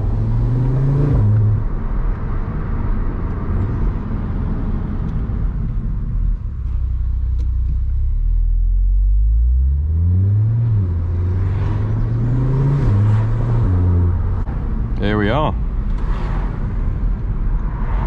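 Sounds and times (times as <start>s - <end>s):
car engine accelerating: 0.0s - 2.1s, 3.3s - 15.0s.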